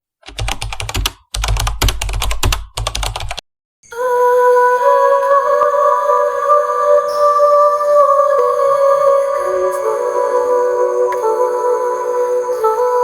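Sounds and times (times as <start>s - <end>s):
keyboard typing clatter: 0.2s - 3.4s.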